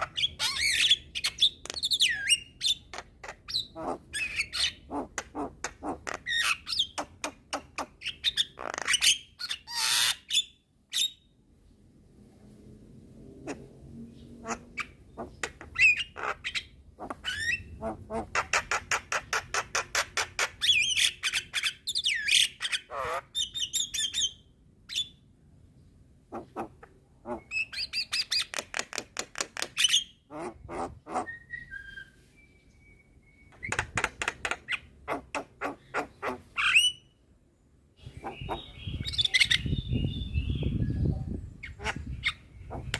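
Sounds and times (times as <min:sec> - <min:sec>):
bird whistled notes: 0:31.3 - 0:33.7.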